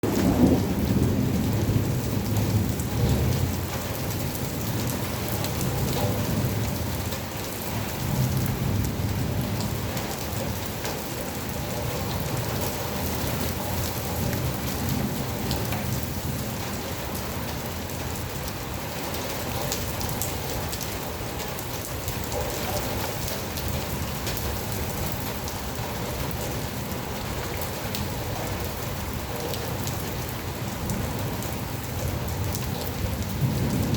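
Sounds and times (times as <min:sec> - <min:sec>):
steady rain falling: 0:00.0 - 0:33.9.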